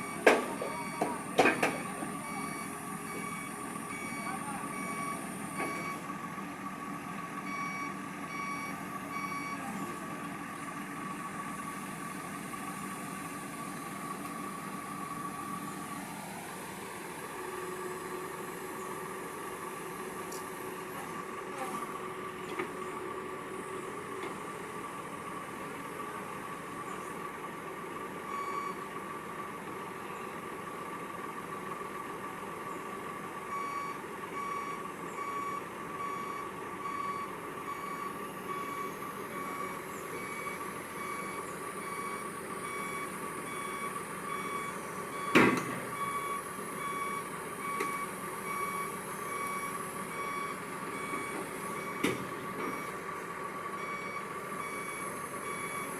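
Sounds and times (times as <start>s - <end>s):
travel alarm beeping: 0.0s - 6.0s, 7.5s - 9.8s, 46.0s - 52.9s
excavator engine running: 0.0s - 55.9s.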